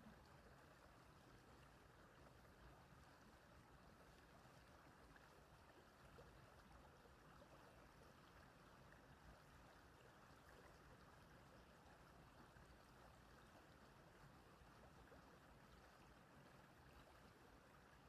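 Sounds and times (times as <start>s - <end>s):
faint running stream water: 0.0s - 18.0s.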